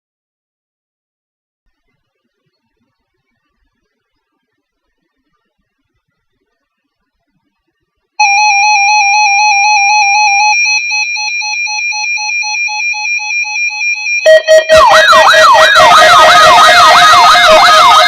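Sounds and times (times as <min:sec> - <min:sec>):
harsh warbling alarm: 0:08.2 - 0:18.0
rapid electronic beeps: 0:10.2 - 0:18.0
warbling electronic tone: 0:14.2 - 0:18.0.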